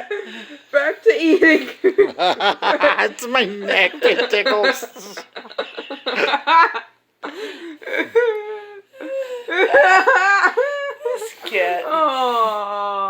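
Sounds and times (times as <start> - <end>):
person giggling: 2.8 - 11.4.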